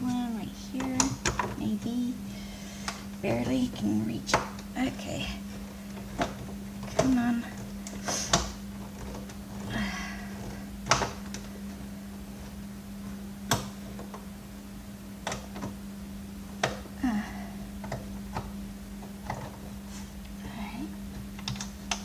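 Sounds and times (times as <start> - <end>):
steady low hum: 0.0 - 22.0.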